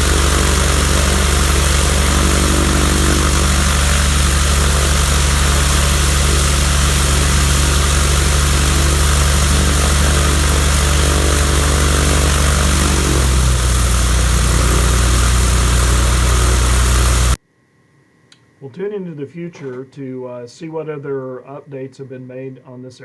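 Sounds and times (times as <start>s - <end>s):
propeller plane engine running: 0.0s - 17.4s.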